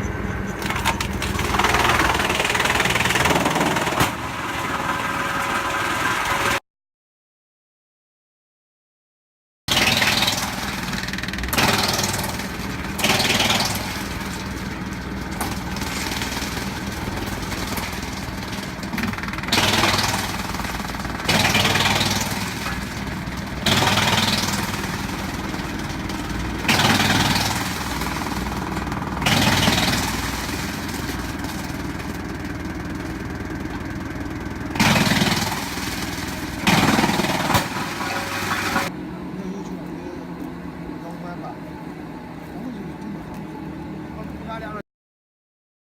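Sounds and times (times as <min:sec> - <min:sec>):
wood chipper engine running: 0:00.0 - 0:06.6, 0:09.7 - 0:44.8
loud chipping bursts: 0:00.6 - 0:06.5, 0:09.7 - 0:38.9.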